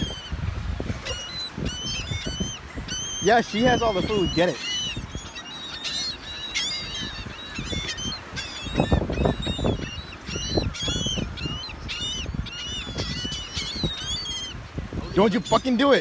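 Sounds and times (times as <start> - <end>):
gulls squawking: 0.0 - 16.0.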